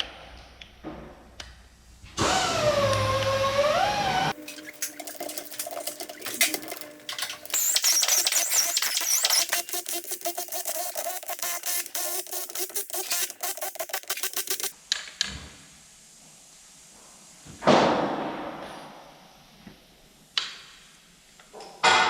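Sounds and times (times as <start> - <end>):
ratchet wrench clicking: 4.4 - 14.8.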